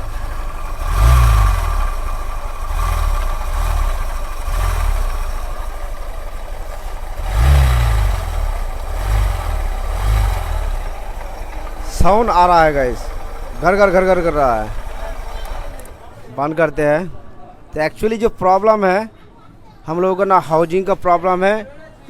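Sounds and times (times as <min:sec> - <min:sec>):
motorcycle engine revving: 0:00.0 - 0:16.0
rough rumbling inside engine: 0:00.0 - 0:16.0.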